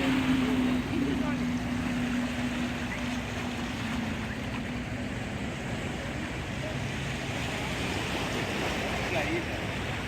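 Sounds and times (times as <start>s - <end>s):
waves washing against rocks: 0.0s - 4.5s.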